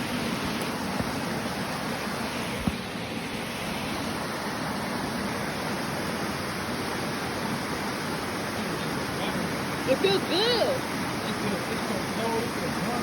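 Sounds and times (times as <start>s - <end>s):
creek water flowing: 0.0s - 13.0s.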